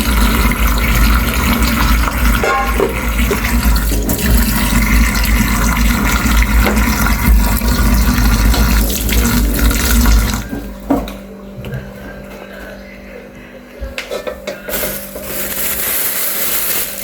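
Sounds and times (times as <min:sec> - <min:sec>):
water running from tap into sink: 0:00.0 - 0:10.7.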